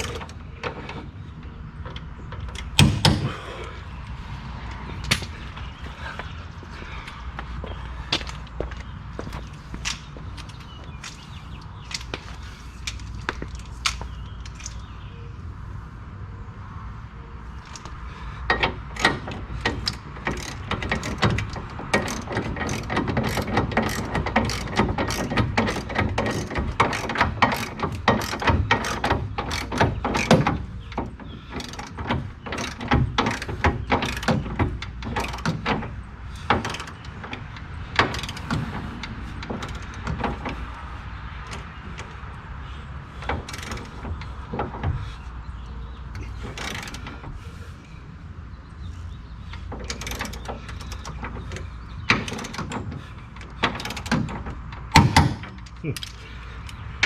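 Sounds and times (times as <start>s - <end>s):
ratchet wrench clicking: 18.5s - 35.6s.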